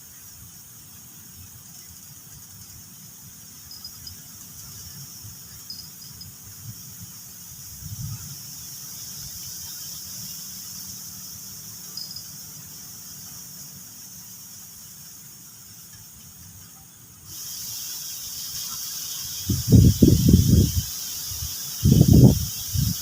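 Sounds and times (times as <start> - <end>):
insect chirps: 0.0 - 23.0
insects droning: 0.0 - 23.0
wind buffeting microphone: 6.2 - 8.5, 19.4 - 23.0.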